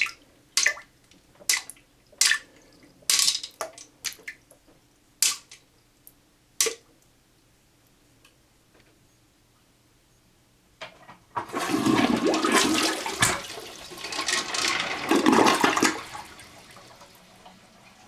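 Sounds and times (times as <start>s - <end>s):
small objects plopping into water: 1.5s - 2.4s.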